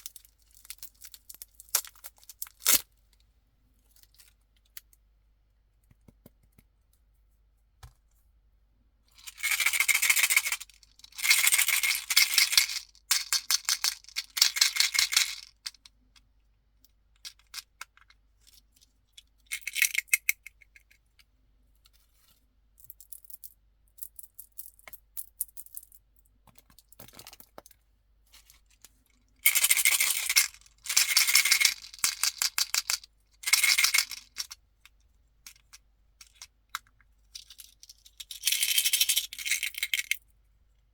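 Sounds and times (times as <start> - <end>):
candies rattling in container: 29.5 - 34.4.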